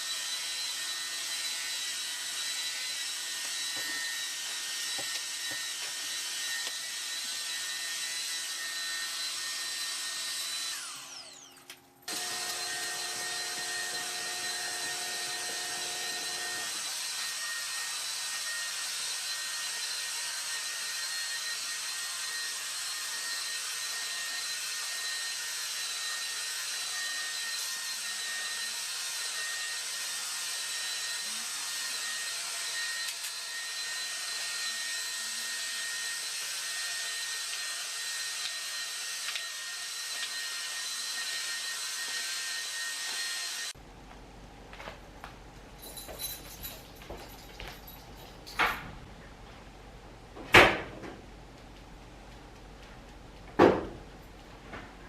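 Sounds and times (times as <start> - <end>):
floor cleaner motor whine: 0.0 - 45.4.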